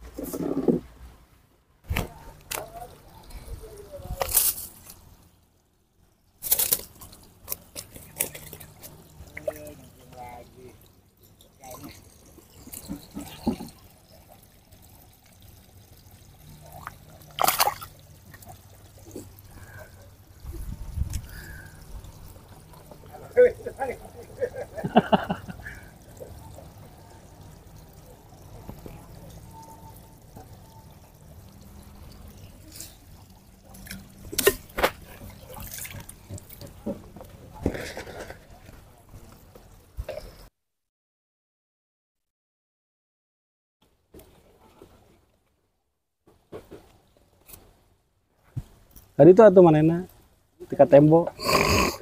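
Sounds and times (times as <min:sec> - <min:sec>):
water trickling and splashing: 0:00.0 - 0:40.5
loud splash: 0:17.4 - 0:17.9.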